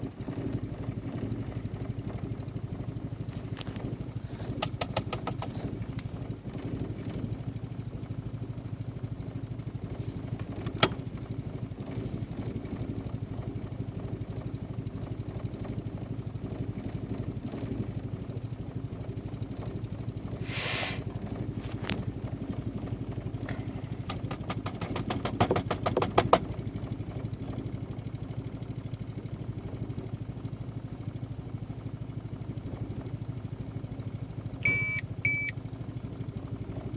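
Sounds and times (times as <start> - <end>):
car engine idling: 0.0 - 36.9
rapid clicks and knocks: 4.6 - 5.6, 24.0 - 26.6
short hiss: 20.4 - 21.0.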